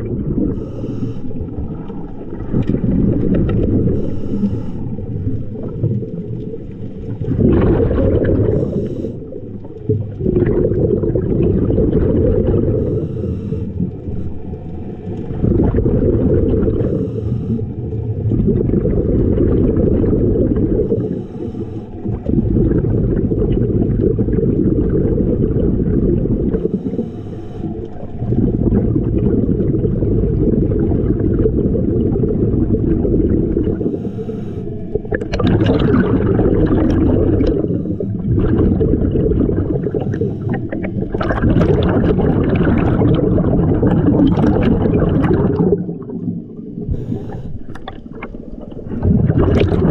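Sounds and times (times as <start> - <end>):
underwater bubbles gurgling: 0.0 - 49.9.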